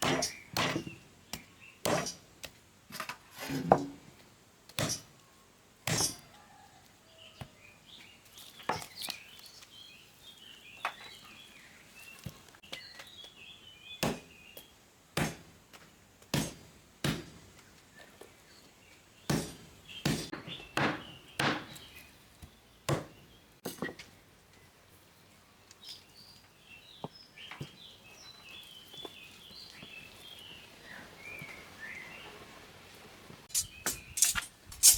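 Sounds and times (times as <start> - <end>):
birds chirping: 7.2 - 14.8, 25.6 - 32.7, 33.4 - 34.9
sharp chopping knocks: 14.0 - 14.3, 16.3 - 17.4, 19.3 - 21.8, 22.9 - 23.2.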